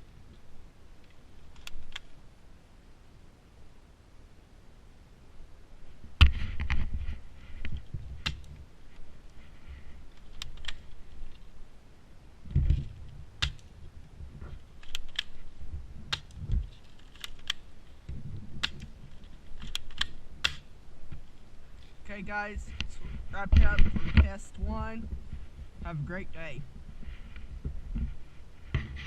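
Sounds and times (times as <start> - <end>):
sharp clicks: 10.2 - 11.4, 17.0 - 17.7, 19.6 - 20.7.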